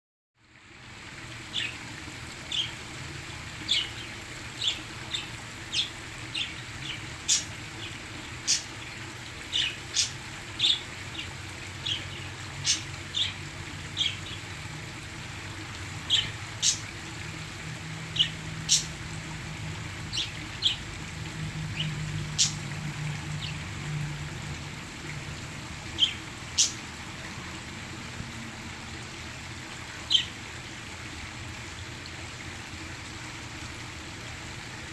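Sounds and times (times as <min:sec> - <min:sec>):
falling water rushing: 0:00.4 - 0:34.9
parakeets chirping: 0:02.5 - 0:02.7, 0:03.7 - 0:08.7, 0:09.5 - 0:14.4, 0:16.0 - 0:16.9, 0:18.1 - 0:19.0, 0:20.0 - 0:20.9, 0:21.5 - 0:23.7, 0:25.9 - 0:26.8, 0:30.1 - 0:30.4.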